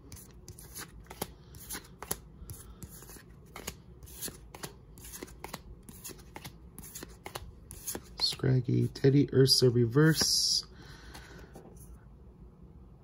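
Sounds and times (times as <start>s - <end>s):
trading cards snapping and rustling: 0.1s - 8.4s.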